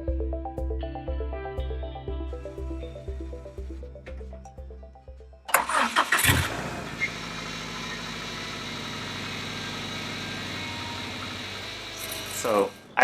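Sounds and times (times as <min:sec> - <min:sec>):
car engine starting and idling: 0:05.5 - 0:13.0.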